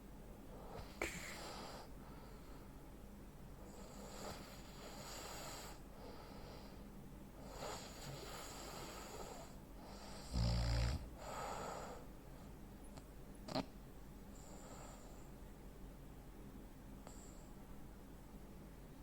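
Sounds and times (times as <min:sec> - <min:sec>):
man breathing heavily in sleep: 0:00.5 - 0:02.8, 0:03.6 - 0:12.2, 0:14.3 - 0:15.4
loud deep snore: 0:10.1 - 0:11.7.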